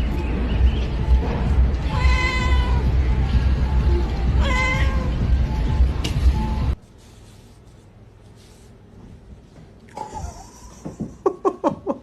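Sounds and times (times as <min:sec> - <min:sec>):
cat mewing: 0:01.8 - 0:02.9, 0:04.4 - 0:05.2.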